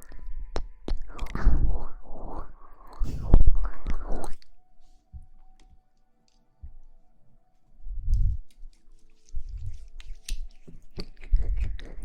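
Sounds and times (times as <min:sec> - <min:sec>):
faint steady tone: 0:00.0 - 0:10.9
rustling against microphone: 0:08.0 - 0:12.0.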